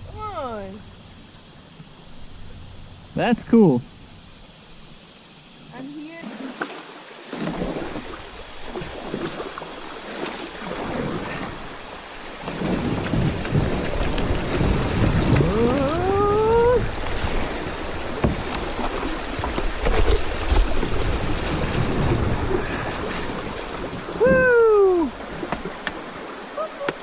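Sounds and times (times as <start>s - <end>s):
water splashing around kayak: 0.0s - 27.0s
wind buffeting microphone: 12.4s - 25.8s.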